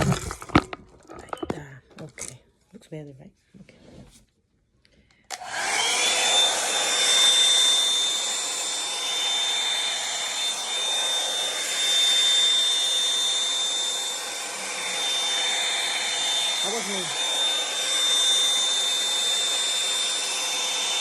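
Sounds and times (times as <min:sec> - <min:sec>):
hot-air brush motor whining: 0:05.3 - 0:21.0.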